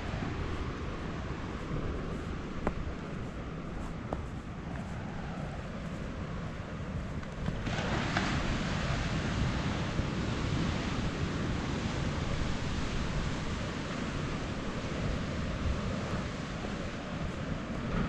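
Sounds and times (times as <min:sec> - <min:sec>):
wind buffeting microphone: 0:00.0 - 0:18.0
sea surf rushing: 0:06.2 - 0:18.0.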